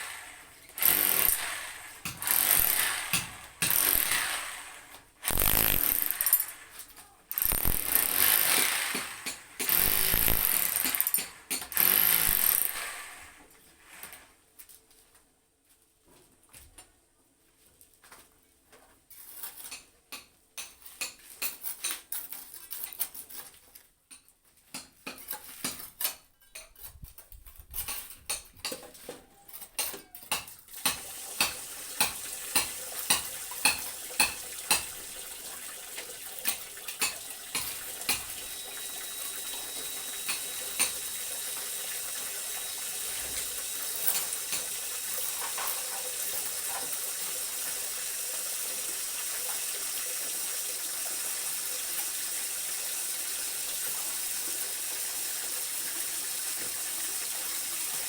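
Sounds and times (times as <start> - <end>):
hard objects clinking: 0.8 - 12.9.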